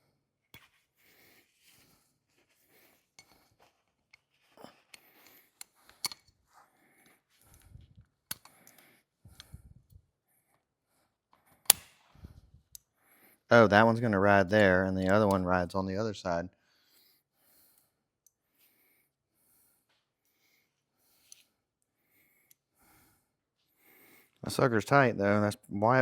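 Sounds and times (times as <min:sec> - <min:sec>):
small metal parts clicking: 0:05.2 - 0:06.3
spring snapping against shaft: 0:11.6 - 0:12.0.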